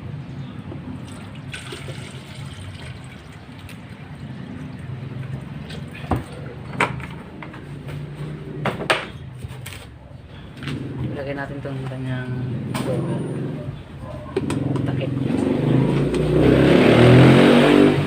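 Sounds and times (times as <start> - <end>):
water pouring: 1.0 - 6.0.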